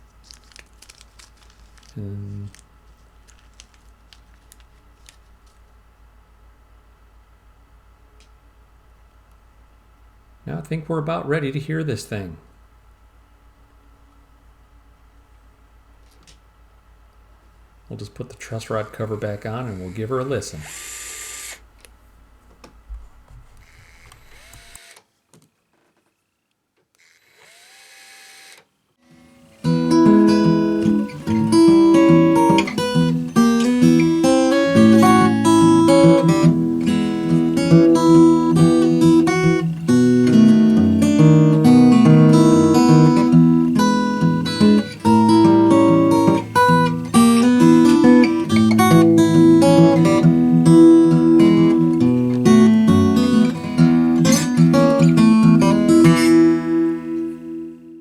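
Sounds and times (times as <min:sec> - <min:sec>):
faint handling noises: 0:00.0 - 0:05.8
acoustic guitar playing: 0:29.1 - 0:58.0.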